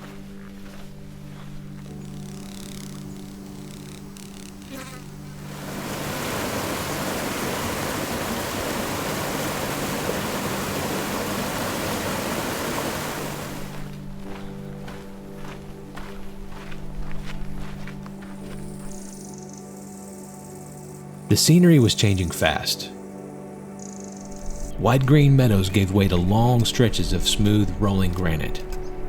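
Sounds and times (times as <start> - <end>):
background music low notes: 0.0 - 29.0
rushing hiss: 5.4 - 13.7.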